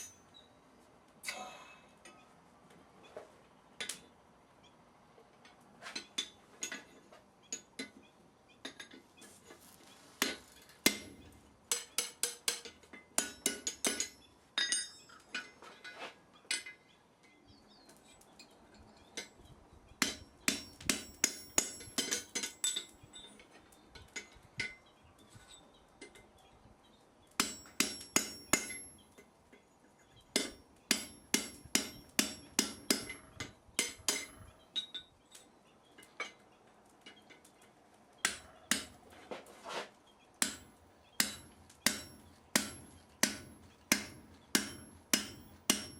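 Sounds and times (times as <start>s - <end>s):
hammer striking anvil: 10.2s - 15.0s, 20.0s - 22.9s, 27.4s - 29.0s, 30.4s - 34.4s, 38.2s - 39.0s, 40.4s - 45.9s.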